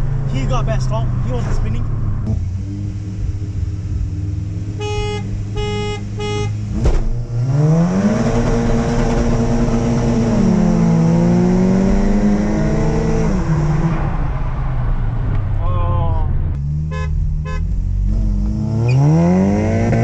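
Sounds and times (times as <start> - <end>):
car engine revving: 0.0 - 20.0
car horn toots: 4.8 - 6.6, 16.8 - 17.7.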